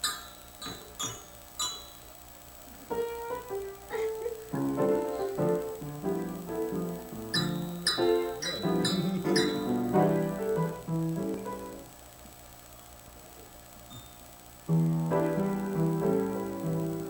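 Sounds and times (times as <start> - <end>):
piano notes and chords: 2.9 - 11.9, 14.7 - 17.0.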